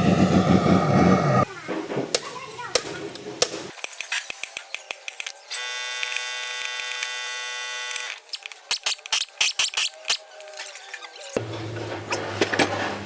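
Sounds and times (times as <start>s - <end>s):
power tool buzzing whine: 5.5s - 8.1s.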